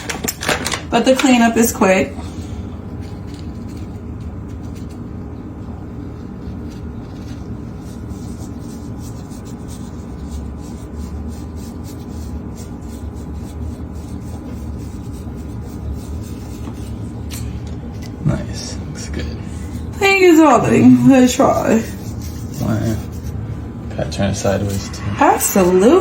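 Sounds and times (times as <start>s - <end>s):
low hum: 15.3s - 26.0s.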